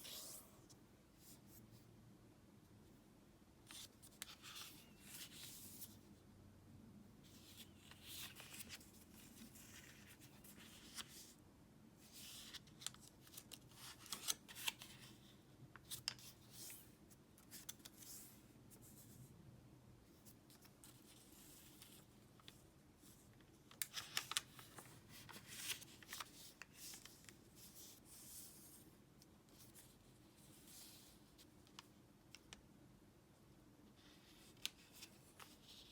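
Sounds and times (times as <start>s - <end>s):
paper rustling: 23.7s - 28.2s.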